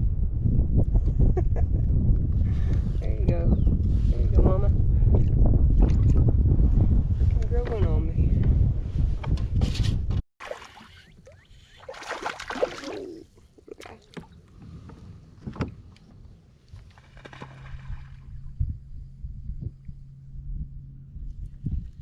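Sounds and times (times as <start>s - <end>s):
water sloshing around kayak: 10.4s - 18.4s
low steady hum: 16.0s - 22.0s.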